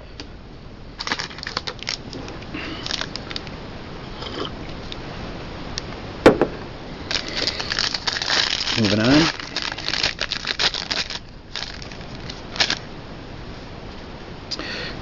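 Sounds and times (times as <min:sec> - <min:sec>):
trading cards shuffling: 0:07.1 - 0:12.8.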